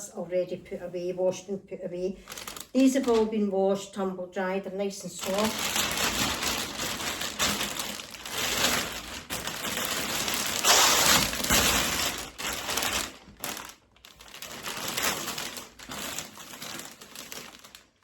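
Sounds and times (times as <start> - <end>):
plastic bag crinkling: 2.2 - 3.6, 5.0 - 18.0.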